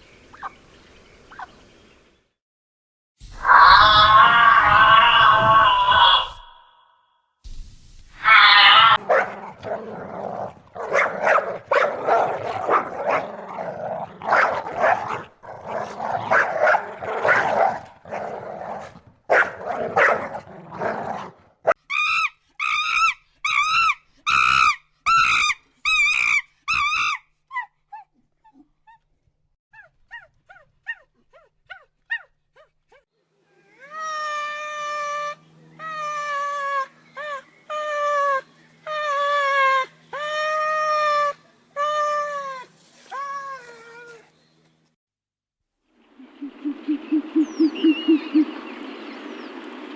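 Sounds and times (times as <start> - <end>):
dog barking and growling: 8.5 - 21.8
faint chirps: 46.0 - 49.9.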